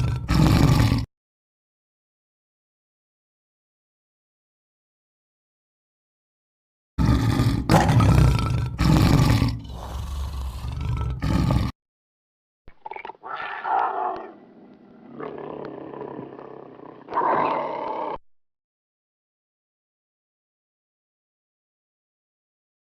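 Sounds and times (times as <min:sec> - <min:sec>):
animal roaring: 0:00.0 - 0:01.1, 0:07.0 - 0:11.8, 0:13.2 - 0:18.2.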